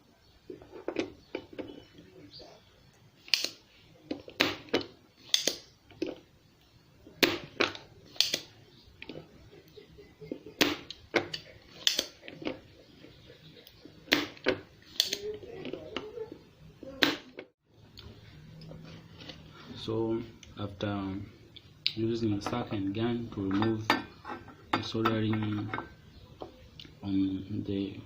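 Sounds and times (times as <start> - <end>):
desoldering pump snapping: 3.2 - 6.2, 7.2 - 9.2, 10.6 - 12.6, 13.6 - 15.3.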